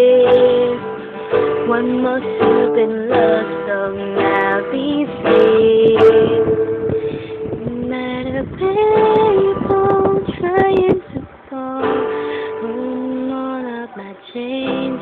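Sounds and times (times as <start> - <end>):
young female voices singing: 1.6 - 6.9, 12.6 - 15.0.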